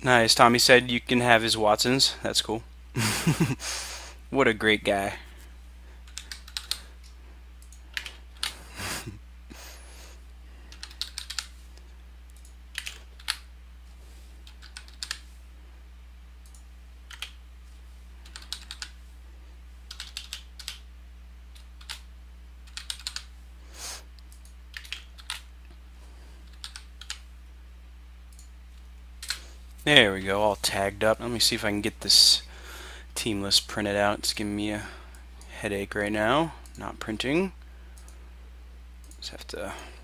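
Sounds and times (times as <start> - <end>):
low electrical hum: 0.0 - 40.0
keyboard typing clicks: 6.1 - 6.8, 10.7 - 11.5, 12.3 - 13.5, 14.4 - 15.2, 16.4 - 17.4, 18.2 - 19.0, 19.9 - 20.8, 21.5 - 23.3, 24.2 - 25.5, 26.5 - 27.2.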